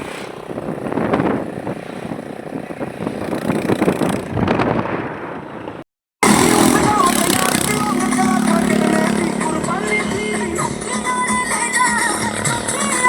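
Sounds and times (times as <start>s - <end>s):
wind buffeting microphone: 0.0s - 5.8s
motorcycle engine riding: 0.0s - 13.0s.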